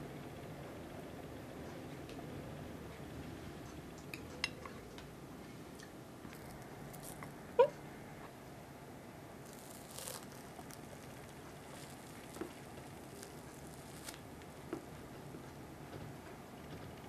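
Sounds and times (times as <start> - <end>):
steady low hiss: 0.0 - 16.9
crackling rustle: 6.3 - 7.4, 9.4 - 15.1.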